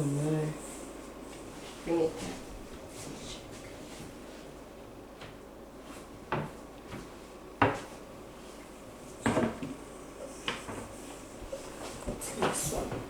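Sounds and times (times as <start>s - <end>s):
knocks and clatters in cupboard: 9.2s - 9.8s.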